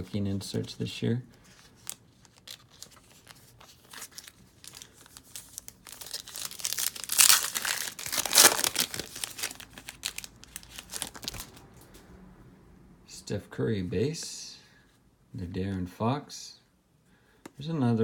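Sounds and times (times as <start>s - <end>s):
foil wrapper tearing and crinkling: 1.8s - 11.6s.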